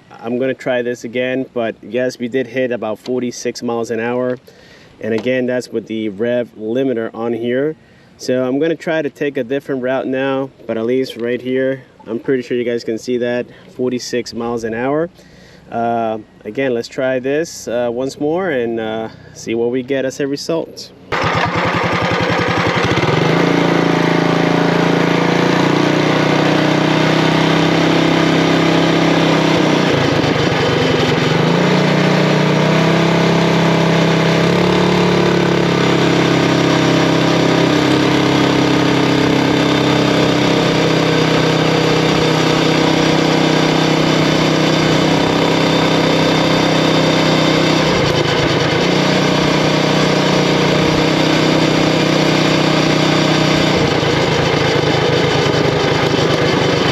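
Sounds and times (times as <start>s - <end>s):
small engine revving: 21.1s - 56.9s.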